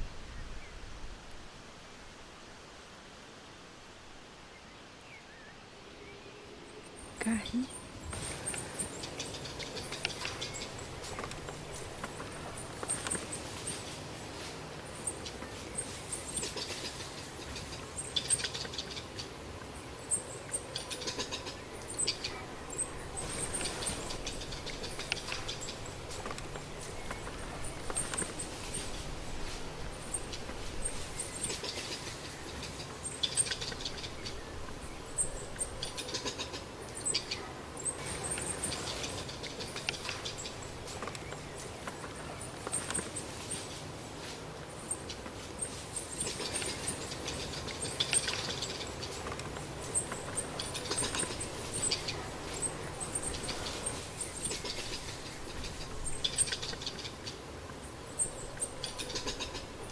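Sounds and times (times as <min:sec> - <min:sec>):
scratching and rustling: 0:08.0 - 0:18.8, 0:22.8 - 0:34.1, 0:38.0 - 0:57.1.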